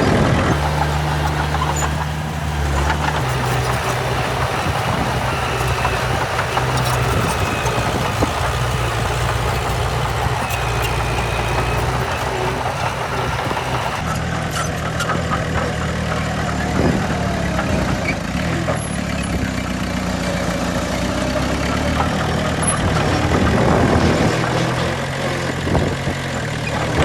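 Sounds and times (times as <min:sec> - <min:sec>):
heavy diesel engine idling: 0:00.5 - 0:14.0.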